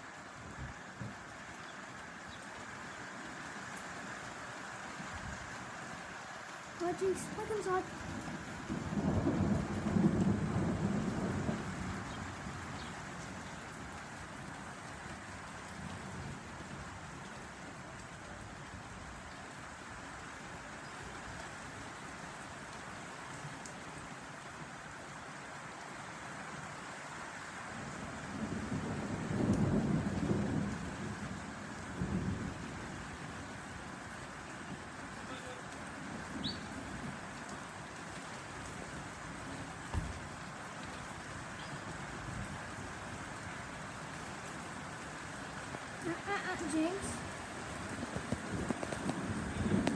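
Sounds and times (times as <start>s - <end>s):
steady rain: 0.0s - 49.9s
thunder rumbling: 6.9s - 13.0s, 28.2s - 33.6s, 46.0s - 49.9s.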